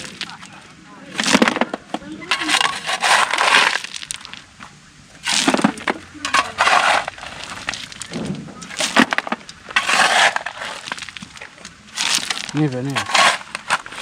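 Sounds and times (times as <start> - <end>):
voices: 0.0 - 3.6, 4.5 - 10.0, 12.5 - 13.3
shovels scraping into ballast: 0.0 - 4.5, 5.2 - 14.0.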